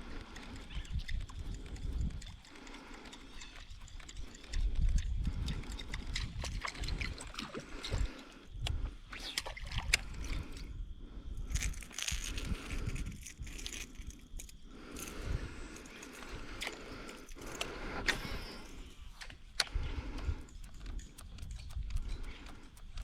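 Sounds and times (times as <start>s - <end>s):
water sloshing and gurgling: 4.2s - 14.5s.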